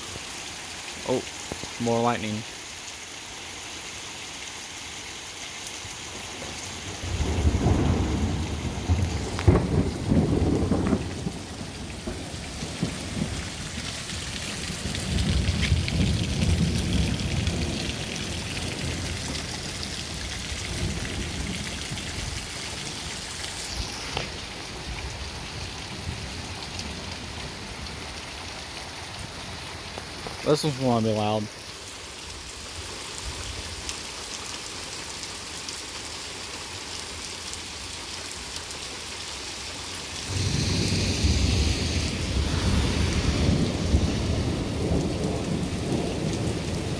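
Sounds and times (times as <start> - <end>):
steady rain: 0.0 - 46.9
thunder rumbling: 6.4 - 23.0, 40.2 - 46.9.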